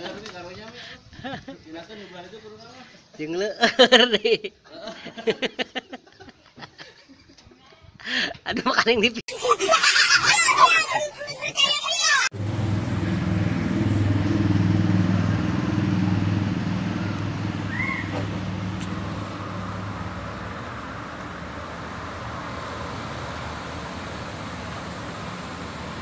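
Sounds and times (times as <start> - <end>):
engine droning: 12.3 - 26.0
faint rising chirp: 12.4 - 22.6.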